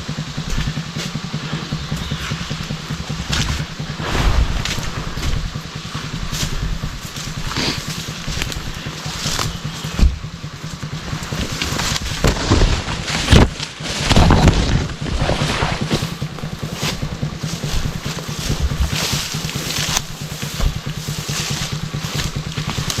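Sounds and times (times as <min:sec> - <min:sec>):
dirt bike engine running: 0:00.0 - 0:23.0
knocks on rocky ground: 0:01.8 - 0:16.2, 0:19.9 - 0:23.0.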